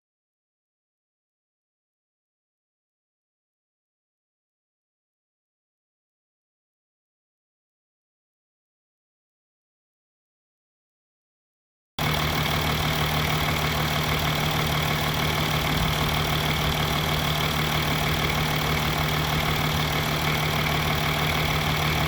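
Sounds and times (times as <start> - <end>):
diesel engine idling: 12.0 - 22.0.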